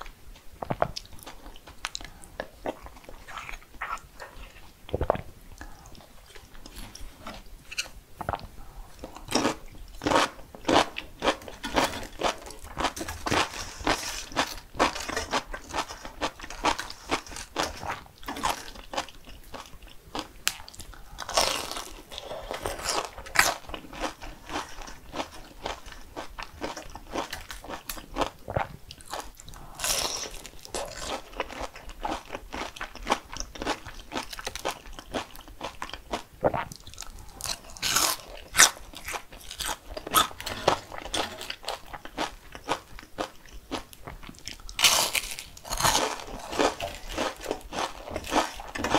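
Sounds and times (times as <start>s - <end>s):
crunchy chewing: 9.0s - 48.9s.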